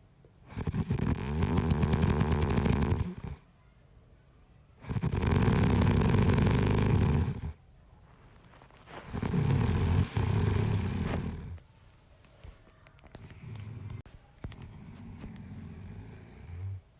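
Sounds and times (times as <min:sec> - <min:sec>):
man snoring: 0:00.5 - 0:03.4, 0:04.8 - 0:07.5, 0:09.1 - 0:11.6, 0:15.2 - 0:16.8.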